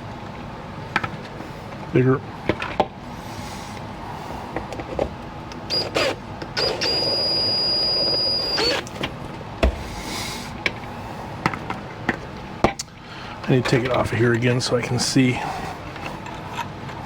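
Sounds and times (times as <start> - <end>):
power drill whining: 5.7 - 8.9.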